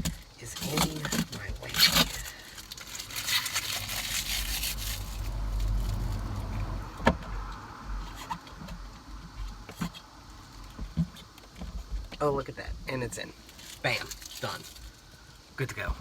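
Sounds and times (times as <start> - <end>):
plastic film rustling: 0.0 - 6.4, 13.4 - 15.1.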